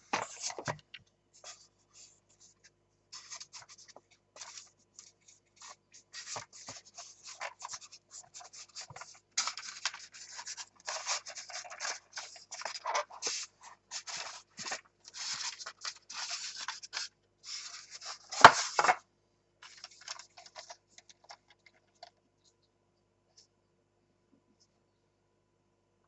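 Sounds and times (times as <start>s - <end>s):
packaging scraping and rustling: 6.2s - 19.0s.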